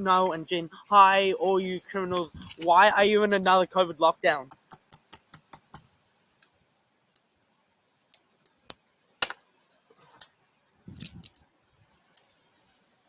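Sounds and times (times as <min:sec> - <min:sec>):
sharp clicks and taps: 0:04.4 - 0:05.9.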